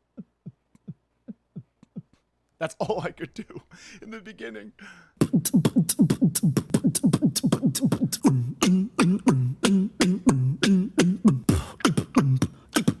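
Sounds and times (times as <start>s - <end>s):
beatboxing mouth percussion: 0.0s - 2.3s, 5.2s - 13.0s.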